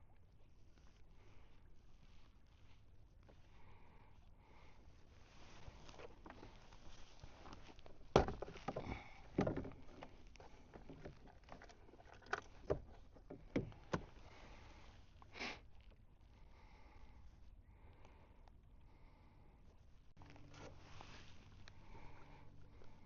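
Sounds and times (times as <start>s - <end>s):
knocks on a kayak: 8.1s - 9.8s.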